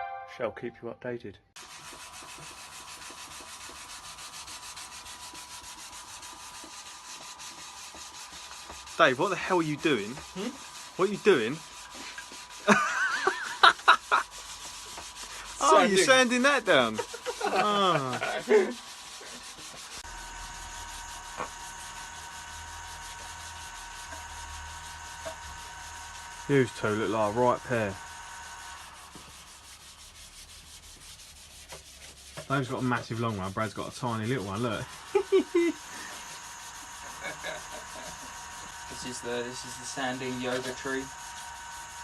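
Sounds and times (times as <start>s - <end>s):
sandpaper sanding plastic: 1.6s - 42.0s.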